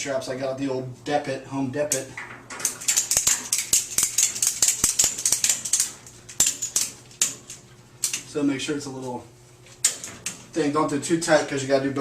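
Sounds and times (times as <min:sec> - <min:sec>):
ratchet strap clicking: 0:02.6 - 0:08.2.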